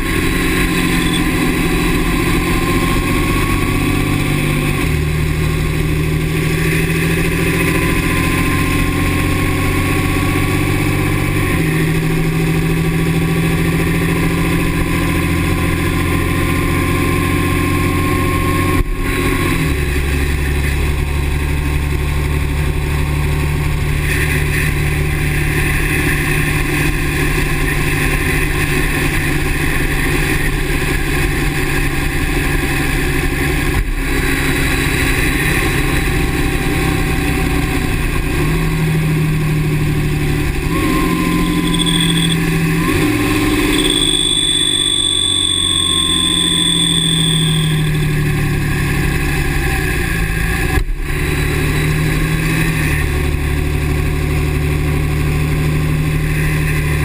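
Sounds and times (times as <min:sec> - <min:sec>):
diesel engine running: 0:00.0 - 0:57.0
faint high squeal: 0:00.8 - 0:02.0, 0:41.0 - 0:48.8.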